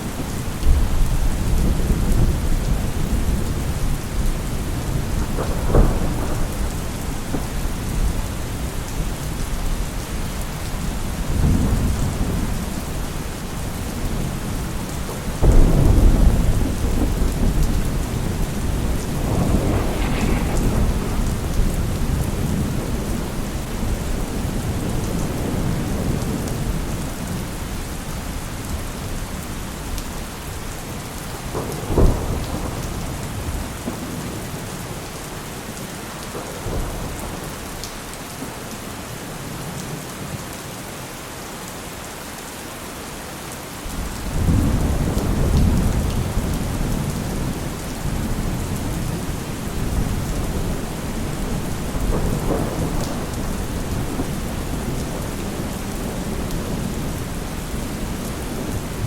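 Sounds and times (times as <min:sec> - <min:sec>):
rolling thunder rumble: 0:00.0 - 0:10.1, 0:10.8 - 0:27.7, 0:43.9 - 0:59.0
heavy rain: 0:00.0 - 0:59.0
thunder crack: 0:04.6 - 0:08.7, 0:15.4 - 0:25.8.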